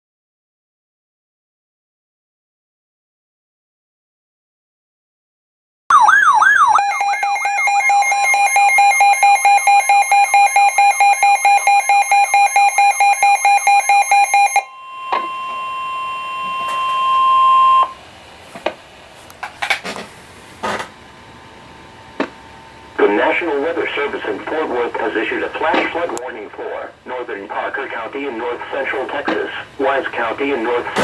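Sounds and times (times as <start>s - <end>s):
wailing siren-like sweep: 5.9s - 17.9s
fast-pulsing alarm tone: 5.9s - 18.0s
steady single beep-tone: 6.7s - 18.0s.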